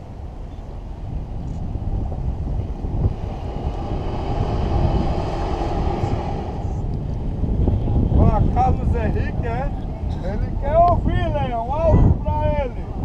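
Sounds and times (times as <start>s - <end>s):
boat engine: 0.0s - 8.8s
wind on microphone: 0.0s - 13.0s
waves roaring through rock cavity: 1.7s - 8.7s.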